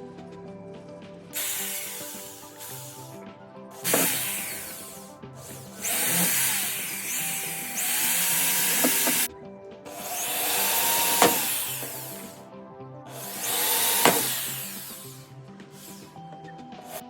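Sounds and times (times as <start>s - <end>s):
background music: 0.0s - 17.0s
power tool cutting wood: 1.4s - 3.2s, 3.8s - 9.3s, 9.9s - 12.4s, 13.1s - 16.2s.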